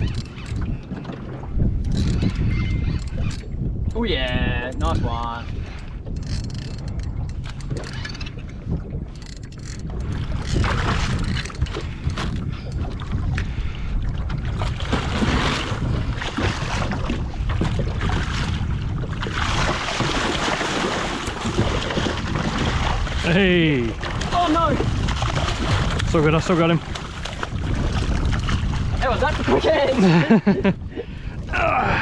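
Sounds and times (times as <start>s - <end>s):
water washing around hull: 0.0s - 32.0s
wind buffeting microphone: 0.0s - 32.0s.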